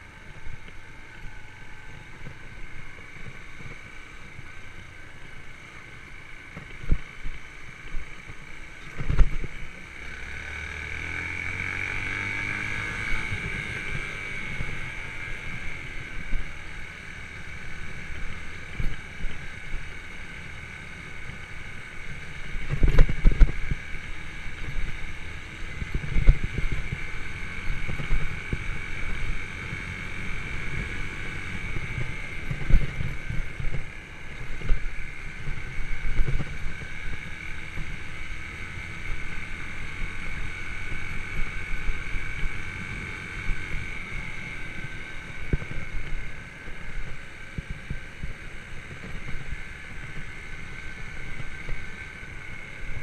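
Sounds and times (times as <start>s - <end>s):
motorcycle engine running: 0.0s - 53.0s
wind on microphone: 24.6s - 38.2s.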